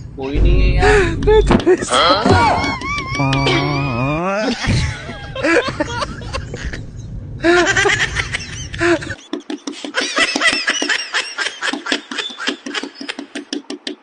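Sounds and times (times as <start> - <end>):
low rumble: 0.2 - 2.0.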